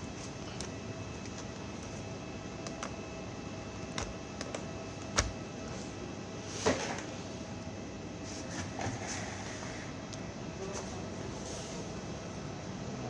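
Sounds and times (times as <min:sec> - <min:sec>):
steady background hum: 0:00.0 - 0:13.0
small parts clicking and tapping: 0:02.6 - 0:03.0.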